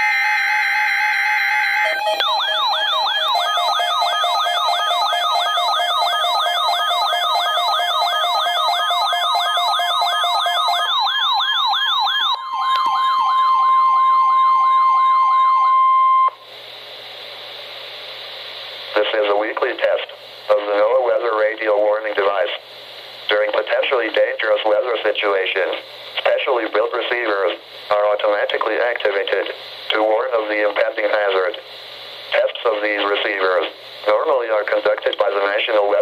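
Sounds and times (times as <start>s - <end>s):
electronic data tones: 0.0s - 16.4s
steady warning alarm tone: 0.0s - 16.4s
sweeping siren-like alert: 0.0s - 16.4s.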